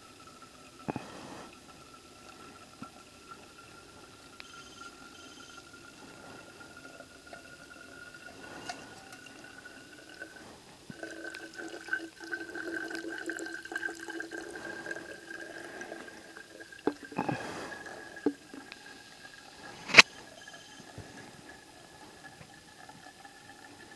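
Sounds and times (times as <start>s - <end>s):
water trickling through coffee filter: 0.0s - 23.9s
ringing note from filling bottle: 3.5s - 10.3s, 10.9s - 19.0s, 19.8s - 21.5s.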